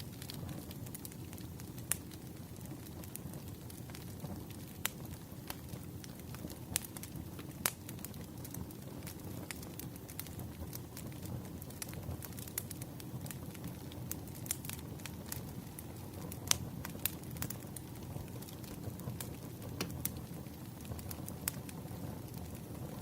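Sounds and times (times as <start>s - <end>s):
wood fire crackling: 0.0s - 23.0s
sharp pops and snaps: 4.8s - 7.8s, 19.8s - 20.5s.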